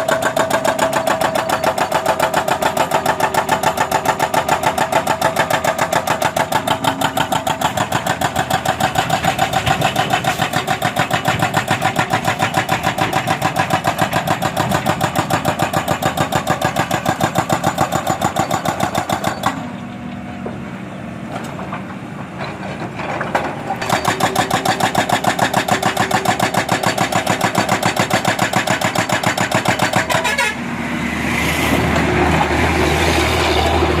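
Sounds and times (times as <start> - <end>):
hydraulic breaker hammering: 0.0 - 19.6, 23.8 - 30.5
excavator engine running: 0.0 - 34.0.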